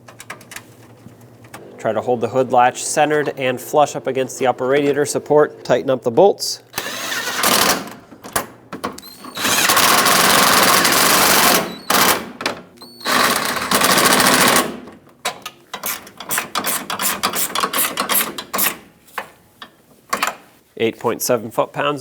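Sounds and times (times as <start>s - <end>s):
power tool driving bolts: 6.7s - 18.8s.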